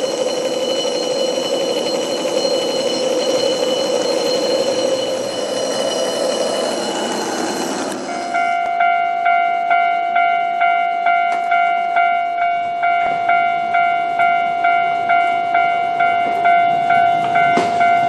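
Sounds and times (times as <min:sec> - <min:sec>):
funicular rail rumble: 0:00.0 - 0:18.0
high-pitched wheel whine: 0:00.0 - 0:18.0.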